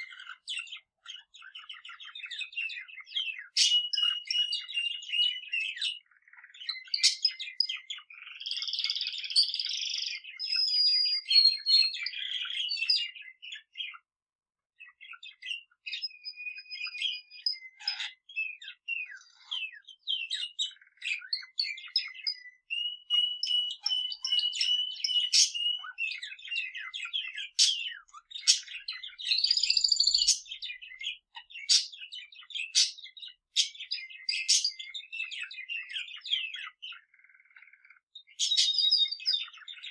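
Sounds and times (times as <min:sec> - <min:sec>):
birds chirping and trilling: 0:00.0 - 0:39.9.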